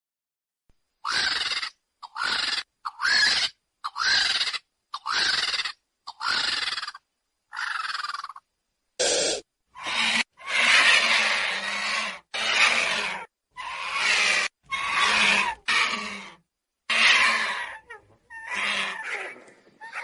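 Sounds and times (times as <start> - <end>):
vulture hissing calls: 9.0 - 17.7, 18.4 - 19.4.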